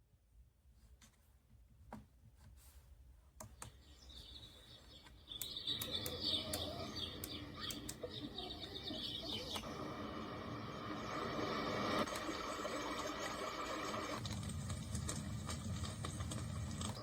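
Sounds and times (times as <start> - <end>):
birdsong chirping: 3.4 - 10.6
faint clicks: 4.9 - 8.2.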